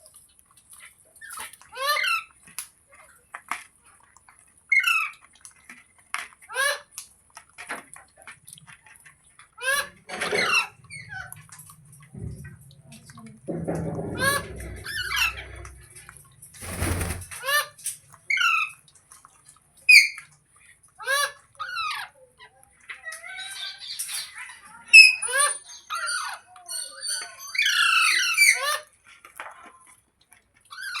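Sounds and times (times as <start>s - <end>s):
noisy rustle: 11.8s - 17.6s.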